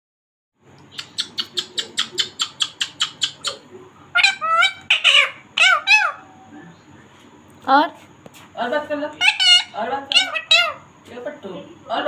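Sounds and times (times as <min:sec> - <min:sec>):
parakeet clicking chirps: 0:00.8 - 0:03.6
parakeet warbling calls: 0:01.0 - 0:06.4, 0:09.2 - 0:10.9.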